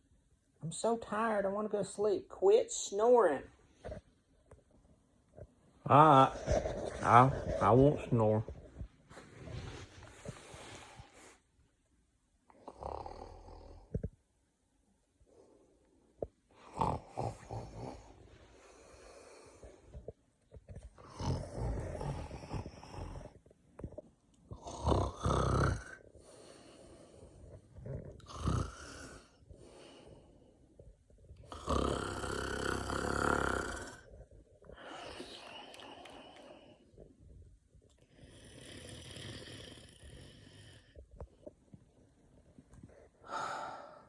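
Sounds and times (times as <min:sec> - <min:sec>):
man snoring: 0:12.6 - 0:13.9, 0:16.6 - 0:18.2, 0:21.0 - 0:23.4, 0:24.6 - 0:27.2, 0:27.8 - 0:30.2, 0:31.4 - 0:34.1, 0:38.2 - 0:41.0.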